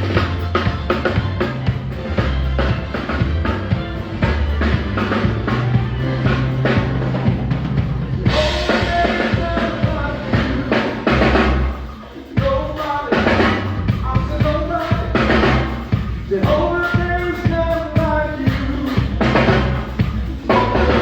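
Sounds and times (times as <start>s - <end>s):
band playing: 0.0s - 21.0s
drum kit: 0.0s - 21.0s.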